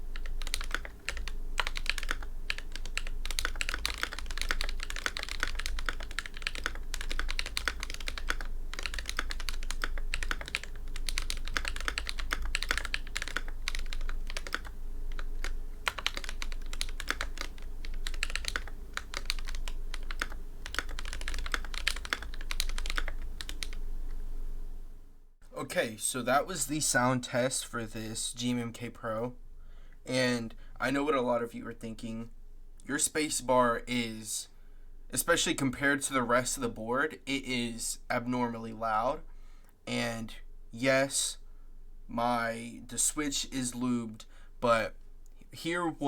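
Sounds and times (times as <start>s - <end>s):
mechanical keyboard typing: 0.0s - 23.8s.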